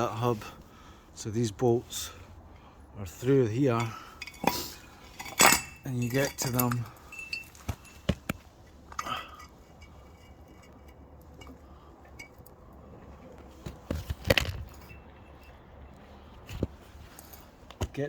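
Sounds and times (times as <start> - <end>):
metal tools clinking: 3.7 - 8.1.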